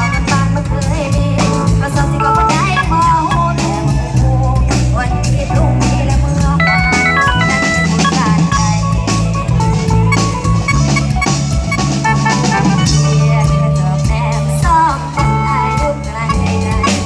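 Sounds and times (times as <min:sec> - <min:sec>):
bass: 0:00.0 - 0:17.0
drum-kit beat: 0:00.0 - 0:17.0
electronic keyboard melody: 0:02.0 - 0:04.0, 0:06.4 - 0:13.4.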